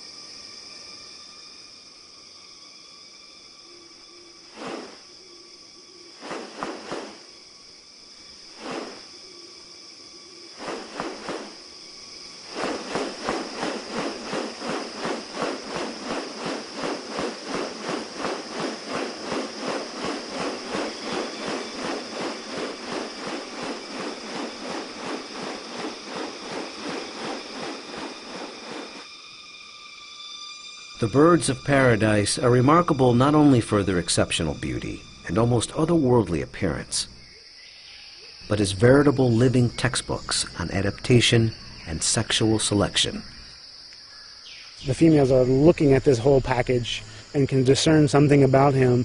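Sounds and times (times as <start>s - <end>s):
insects droning: 0.0s - 49.0s
sharp rhythmic strokes: 12.5s - 29.0s.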